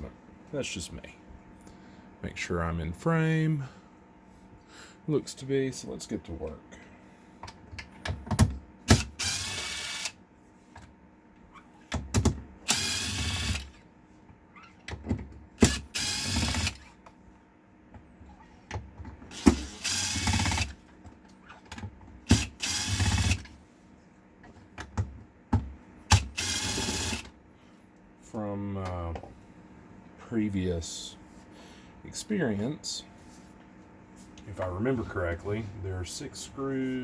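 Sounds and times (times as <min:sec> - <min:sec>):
power screwdriver running: 0:08.9 - 0:10.1, 0:12.7 - 0:13.8, 0:15.6 - 0:16.9, 0:19.3 - 0:20.8, 0:22.3 - 0:23.4, 0:26.1 - 0:27.3
screwdriver bit clicks: 0:12.7 - 0:13.6.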